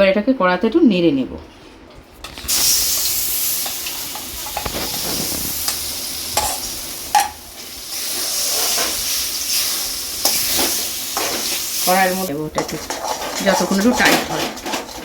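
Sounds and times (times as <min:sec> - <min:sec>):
food sizzling: 0:02.3 - 0:15.0
spatula scraping a pan: 0:08.0 - 0:12.0, 0:12.6 - 0:15.0.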